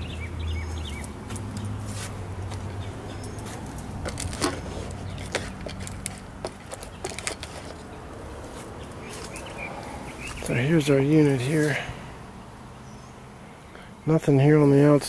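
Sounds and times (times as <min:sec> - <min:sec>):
sharp clicks and knocks: 0:02.5 - 0:08.0.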